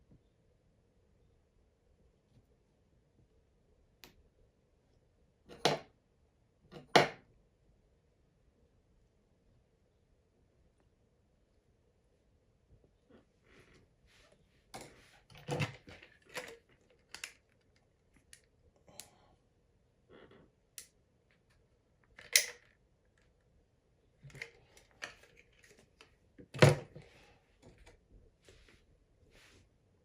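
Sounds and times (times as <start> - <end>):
small parts clicking and knocking: 14.8 - 19.1, 20.8 - 23.4.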